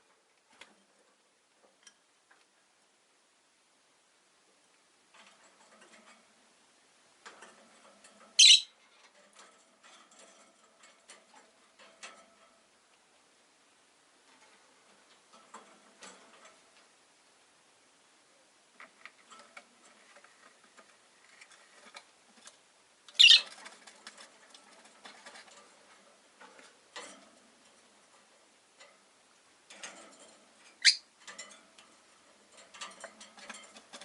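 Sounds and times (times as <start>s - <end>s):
birds clicking and scratching: 0.0s - 2.6s, 5.1s - 6.5s, 7.2s - 12.8s, 14.2s - 17.0s, 18.7s - 34.0s
bird chirps: 8.4s - 8.7s, 23.2s - 23.5s, 30.8s - 31.0s.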